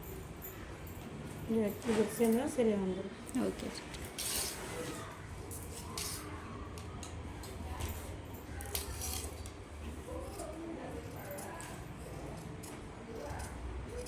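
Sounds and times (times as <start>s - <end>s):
scissors snipping cloth: 10.2s - 14.0s.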